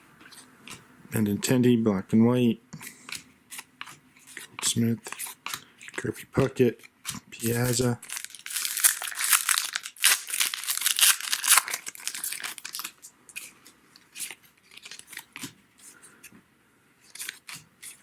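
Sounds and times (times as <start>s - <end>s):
cards rustling: 7.0s - 16.0s, 17.0s - 18.0s
wrapper tearing and crinkling: 7.4s - 13.5s, 14.1s - 15.5s.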